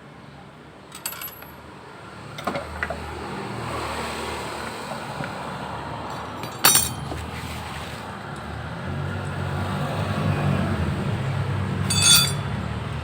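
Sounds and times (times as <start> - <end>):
light metallic clinks: 6.4 - 7.1, 11.9 - 12.5.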